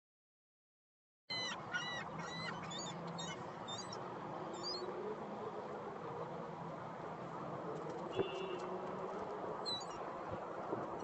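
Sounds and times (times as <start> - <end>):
seagull calling: 1.3 - 4.9.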